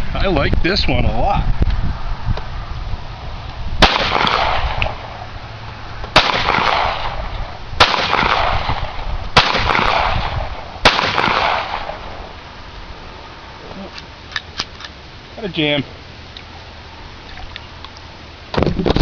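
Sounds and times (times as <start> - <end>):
gunshots with echo: 3.8 - 5.0, 6.2 - 12.1.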